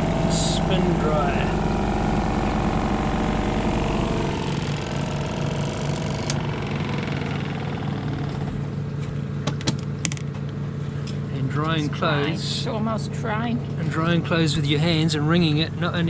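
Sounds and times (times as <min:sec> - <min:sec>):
spin dryer humming: 0:00.0 - 0:09.5
sharp clicks: 0:03.8 - 0:08.7.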